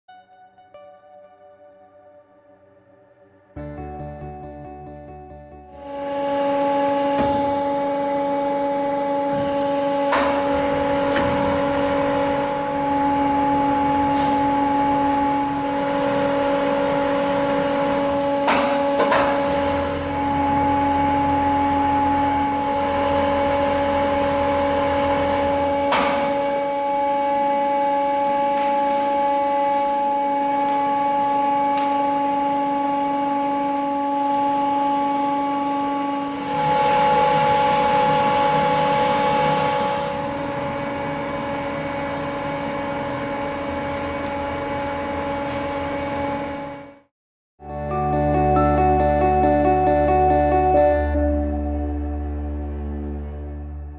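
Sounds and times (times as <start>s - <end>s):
machine motor hum: 5.7s - 47.0s.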